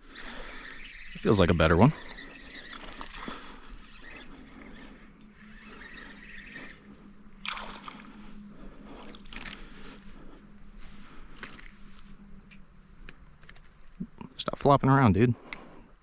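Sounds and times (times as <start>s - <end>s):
water splashing and sloshing: 1.9s - 3.6s, 7.4s - 12.0s.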